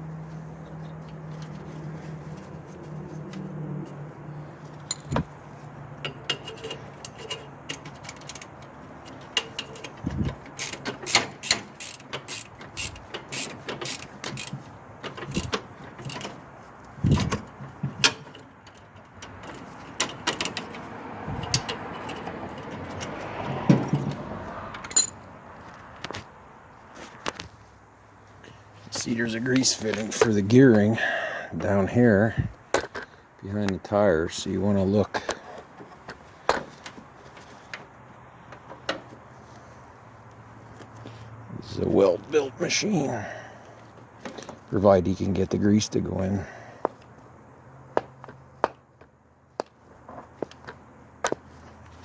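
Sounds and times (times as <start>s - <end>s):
metal parts clanking: 4.8s - 5.3s, 6.0s - 16.4s, 24.8s - 25.2s.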